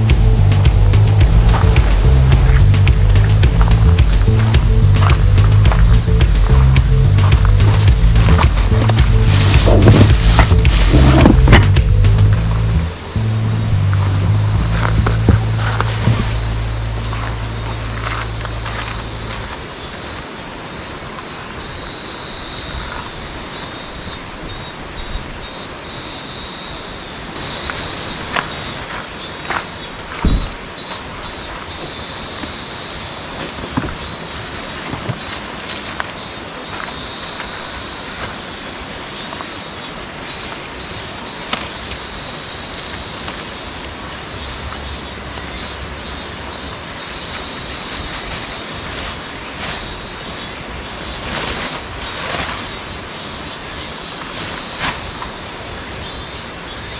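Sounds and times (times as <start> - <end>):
high-pitched chirring: 0.0 - 19.6
flowing water: 0.0 - 25.3
constant wash of noise: 0.0 - 56.9
insects buzzing: 0.0 - 56.9.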